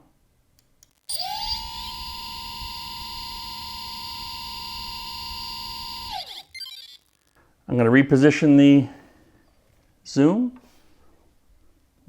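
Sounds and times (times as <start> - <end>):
electric motor whine: 1.0 - 7.4.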